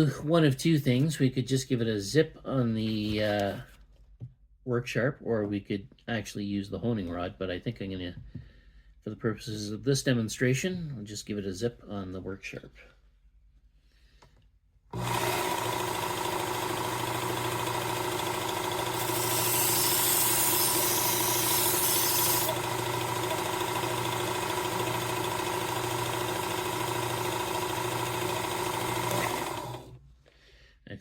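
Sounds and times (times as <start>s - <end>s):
abrasive belt grinding steel: 15.0s - 30.0s
sharpener motor whining: 15.0s - 30.0s.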